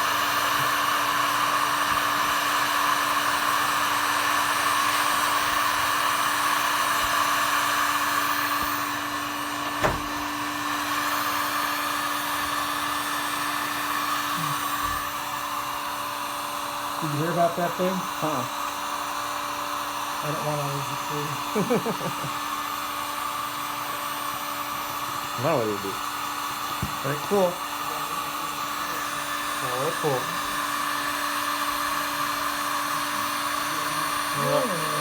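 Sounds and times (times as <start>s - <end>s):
electric blower motor whirring: 0.0s - 35.0s.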